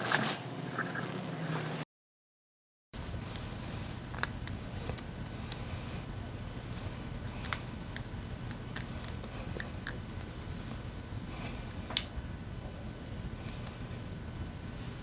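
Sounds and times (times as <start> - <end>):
faint low hum: 3.0 - 15.0
sharp clicks: 3.2 - 5.8, 6.8 - 12.2
hand tools clicking and tapping: 7.2 - 10.8.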